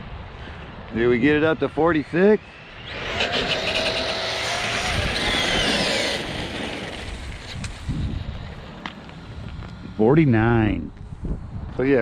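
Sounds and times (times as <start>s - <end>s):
electric motor whine: 2.7s - 10.0s
tyre and wind rush: 2.8s - 12.0s.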